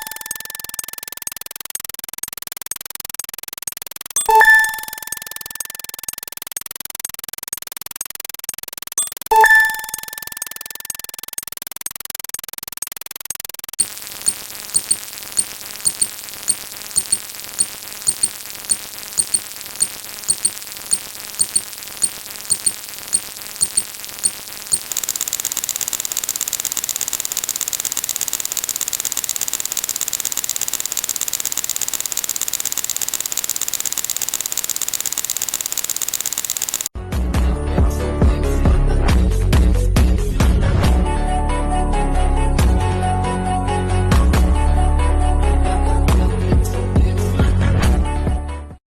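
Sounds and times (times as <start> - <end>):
electronic static hiss: 0.0 - 36.9.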